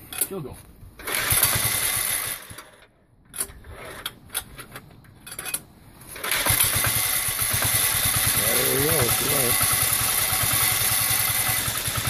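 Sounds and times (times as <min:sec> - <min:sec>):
diesel engine starting and running: 0:01.0 - 0:04.5, 0:06.0 - 0:12.0
engine knocks: 0:06.3 - 0:12.0.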